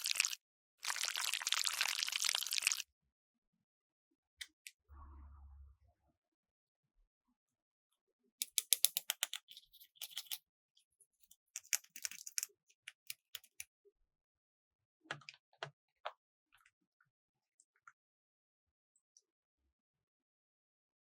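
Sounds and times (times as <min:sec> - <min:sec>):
toys and packaging clicking: 0:08.4 - 0:10.4, 0:11.2 - 0:13.7.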